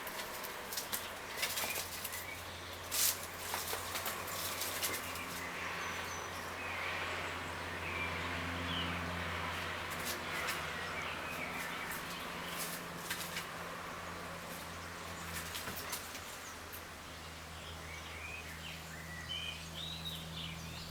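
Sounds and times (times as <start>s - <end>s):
kittens tapping and scuffling: 0.0s - 6.4s, 9.5s - 16.9s.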